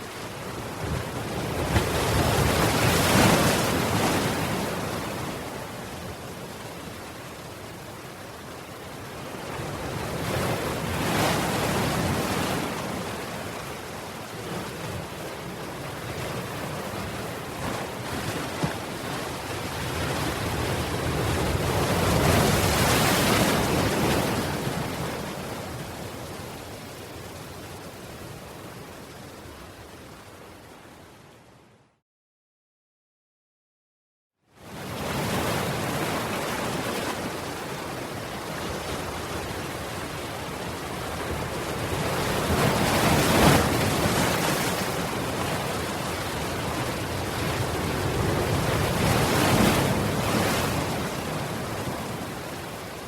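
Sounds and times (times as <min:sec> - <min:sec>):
ocean waves surging: 0:00.2 - 0:05.5, 0:16.4 - 0:27.5, 0:34.8 - 0:53.0.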